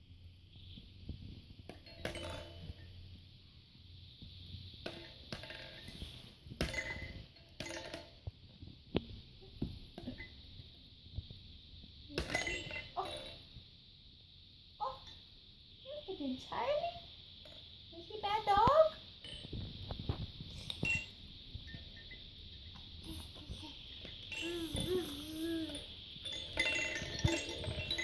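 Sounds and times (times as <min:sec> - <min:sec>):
small hard objects clinking: 0:23.0 - 0:28.0.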